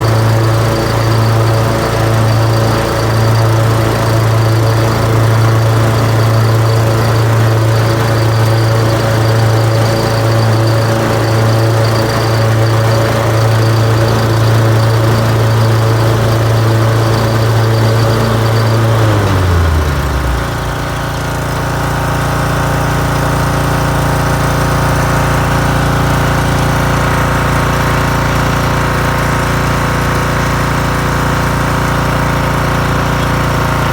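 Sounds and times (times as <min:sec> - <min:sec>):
high-pitched ringing tone: 0:00.0 - 0:21.4
mower engine running: 0:00.0 - 0:33.9.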